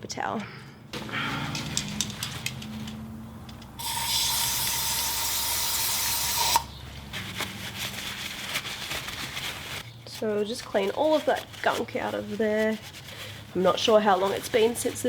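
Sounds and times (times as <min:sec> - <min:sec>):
clicks and rustles of handling: 0:01.0 - 0:03.8
spray can hissing: 0:03.8 - 0:06.7.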